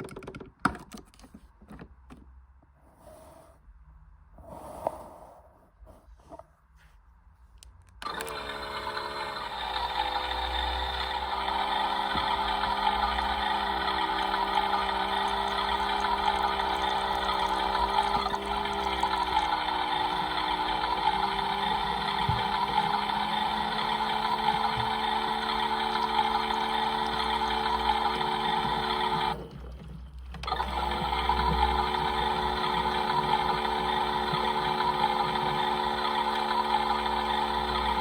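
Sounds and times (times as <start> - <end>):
toy washing machine motor whining: 8.0 - 38.0.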